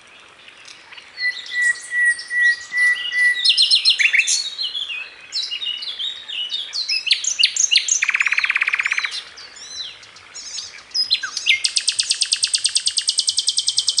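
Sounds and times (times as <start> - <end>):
birds chirping and calling: 0.2 - 14.0
rapid bird trill: 7.7 - 9.2, 11.2 - 14.0.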